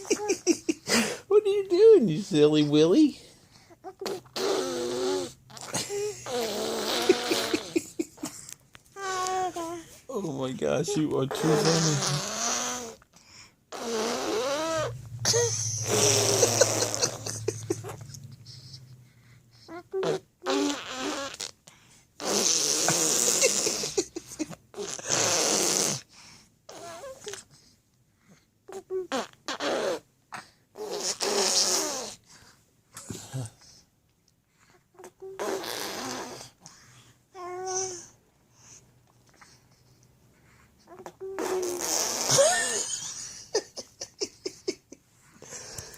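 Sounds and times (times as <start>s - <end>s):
buzzing raspberry snores: 6.3s - 7.8s, 13.8s - 18.6s.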